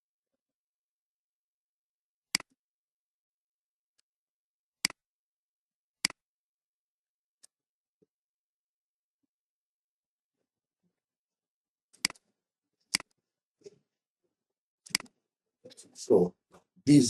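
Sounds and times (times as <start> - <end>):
computer mouse clicks: 14.9 - 15.2.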